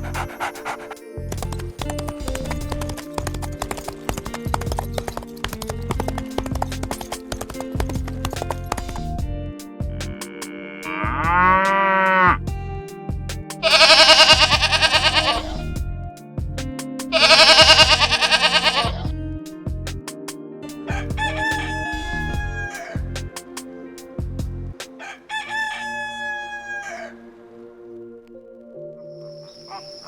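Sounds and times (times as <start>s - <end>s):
background music with steady beat: 0.0s - 29.1s
farm animal bleating: 13.6s - 15.7s, 17.1s - 19.1s.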